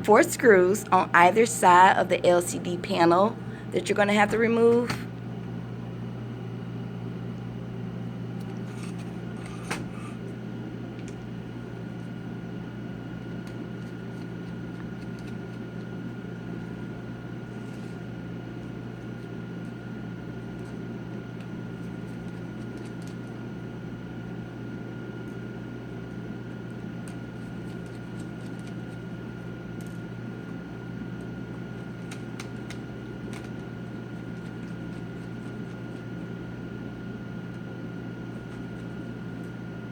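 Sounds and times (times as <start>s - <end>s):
low hum: 0.0s - 17.9s.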